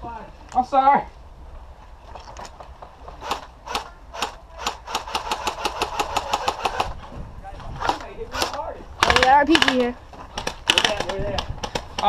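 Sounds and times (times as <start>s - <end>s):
airsoft guns firing: 3.2s - 7.0s, 7.8s - 12.0s.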